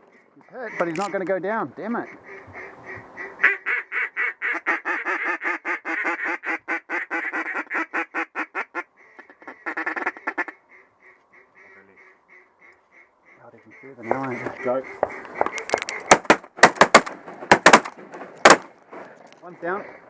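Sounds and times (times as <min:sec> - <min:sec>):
duck quacking: 0:00.4 - 0:16.2.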